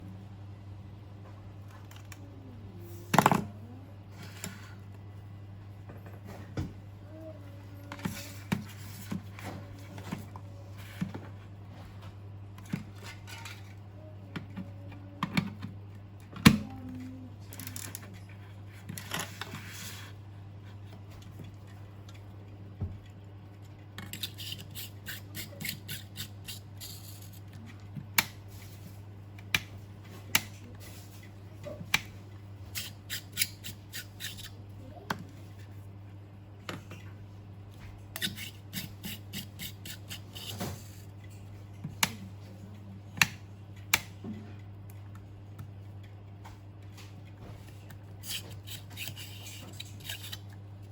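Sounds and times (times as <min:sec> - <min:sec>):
steady low hum: 0:00.0 - 0:50.9
scratchy rustling or snipping: 0:32.7 - 0:34.6, 0:38.2 - 0:41.0, 0:48.2 - 0:50.5.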